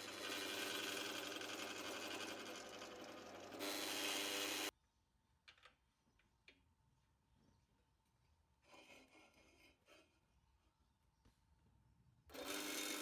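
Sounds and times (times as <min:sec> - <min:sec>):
small power tool motor: 0:00.0 - 0:04.7, 0:12.3 - 0:13.0.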